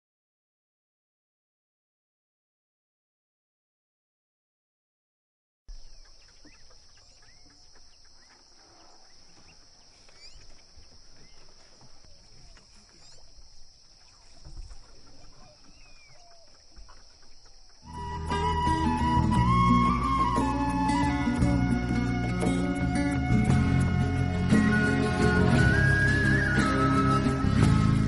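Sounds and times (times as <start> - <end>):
bird chirps: 5.7 - 23.2.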